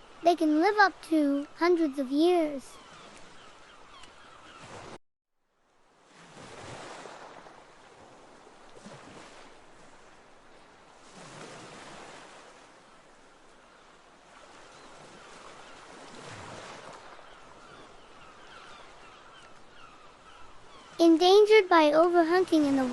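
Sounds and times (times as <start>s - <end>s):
sea water rushing: 6.0s - 22.9s.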